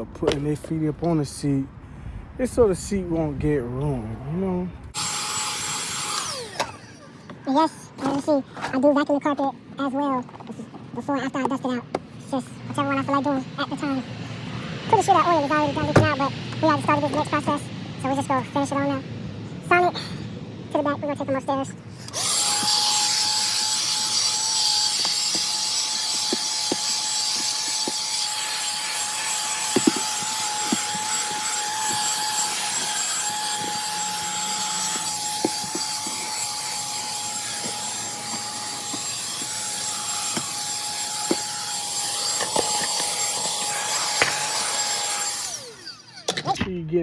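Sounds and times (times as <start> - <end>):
vacuum cleaner motor whine: 5.0 - 7.4, 22.1 - 46.5.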